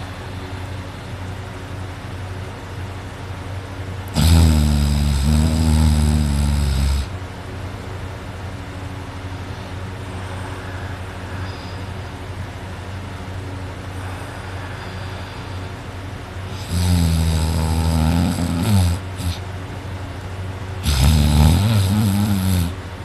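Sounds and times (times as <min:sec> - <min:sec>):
person snoring: 0:04.1 - 0:07.2, 0:16.5 - 0:19.4, 0:20.8 - 0:22.8.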